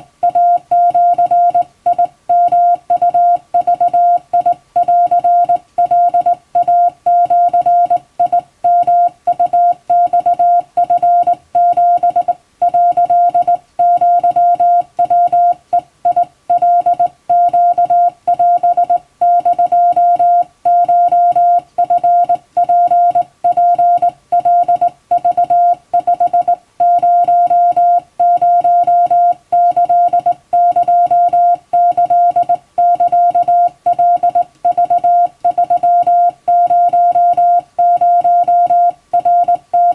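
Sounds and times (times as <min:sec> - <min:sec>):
morse code beeps: 0:00.2 - 0:39.9.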